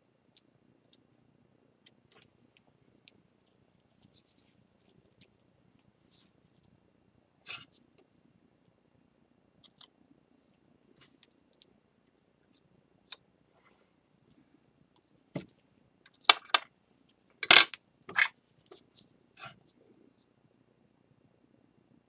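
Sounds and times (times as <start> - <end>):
hands handling tools: 16.2 - 16.6, 17.4 - 18.3.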